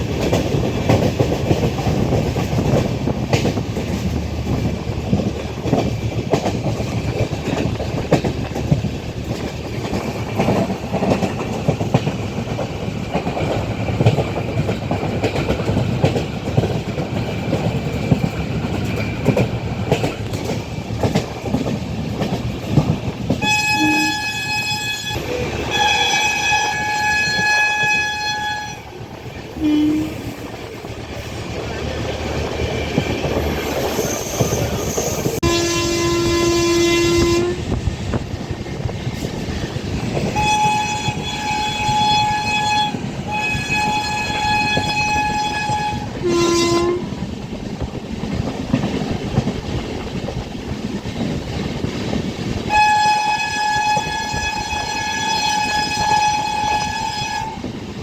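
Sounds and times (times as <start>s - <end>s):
train wheels clickety-clack: 0.0s - 58.0s
locomotive horn blasts: 23.4s - 28.9s, 29.6s - 30.4s, 35.4s - 37.8s, 40.4s - 47.1s, 52.7s - 57.6s.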